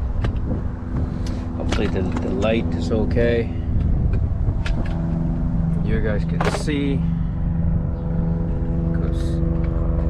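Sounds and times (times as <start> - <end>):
machine humming with constant tones: 0.0 - 10.0.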